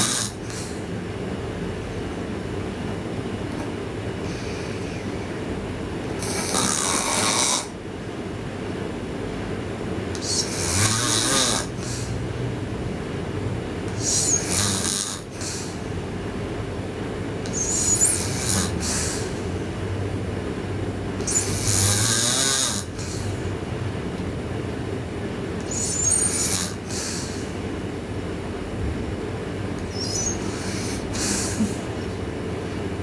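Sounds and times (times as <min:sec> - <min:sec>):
girl snoring loudly: 0:00.0 - 0:00.8, 0:06.2 - 0:07.8, 0:10.2 - 0:12.2, 0:13.9 - 0:15.8, 0:17.5 - 0:19.6, 0:21.2 - 0:23.4, 0:25.6 - 0:27.6, 0:29.8 - 0:32.0
steady low hum: 0:00.0 - 0:33.0.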